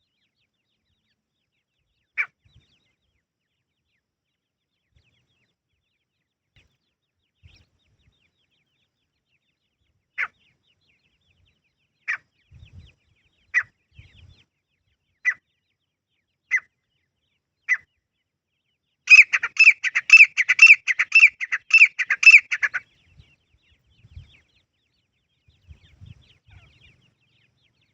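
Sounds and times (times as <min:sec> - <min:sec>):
francolin calling: 0:19.1 - 0:22.8.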